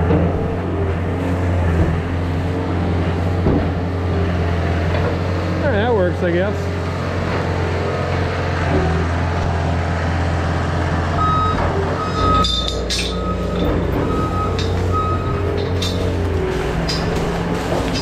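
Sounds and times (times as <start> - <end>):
reverse alarm beeping: 11.2 - 15.5
metallic clanks: 11.6 - 18.0
machine engine running: 13.2 - 18.0.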